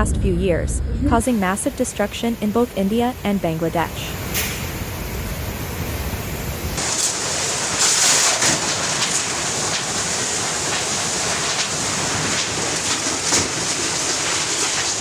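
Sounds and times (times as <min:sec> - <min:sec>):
storm wind: 0:00.0 - 0:15.0
rushing water: 0:06.8 - 0:15.0.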